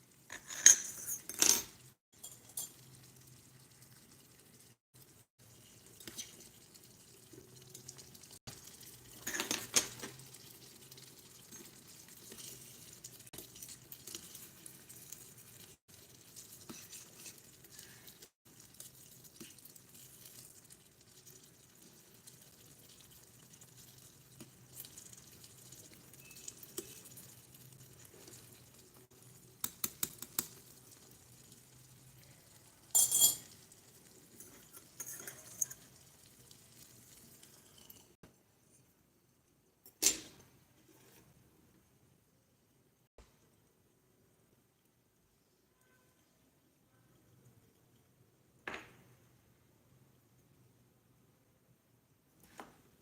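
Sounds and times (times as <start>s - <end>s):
faint steady hiss: 0.0s - 53.0s
utensil clinking on small pot: 32.9s - 33.6s.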